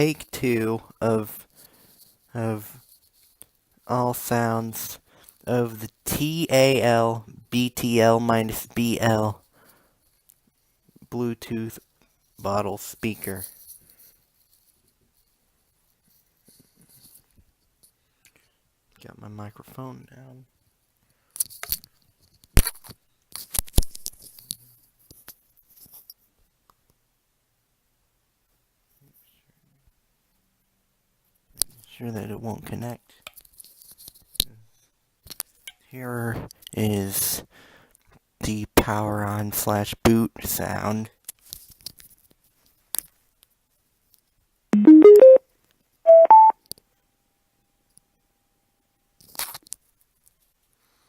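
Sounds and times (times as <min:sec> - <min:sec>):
electronic boot chime: 0:44.8 - 0:45.4, 0:46.1 - 0:46.5.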